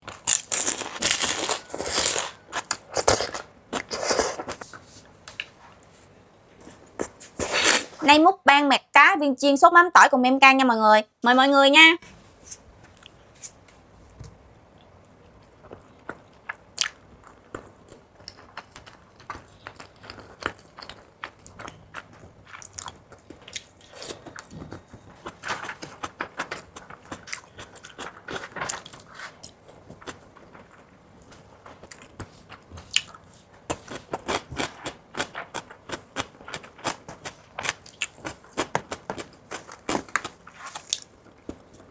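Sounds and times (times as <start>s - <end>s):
crunching of fried food being chewed: 0.0s - 4.7s, 15.3s - 41.9s.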